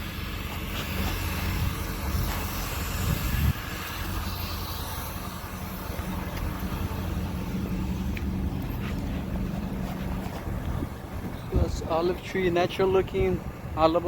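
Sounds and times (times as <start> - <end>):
low engine hum: 0.0 - 14.0.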